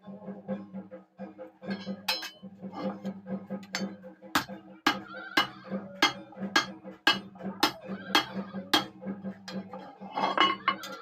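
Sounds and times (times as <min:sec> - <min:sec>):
hammer striking iron: 0:01.7 - 0:02.5, 0:03.7 - 0:09.7.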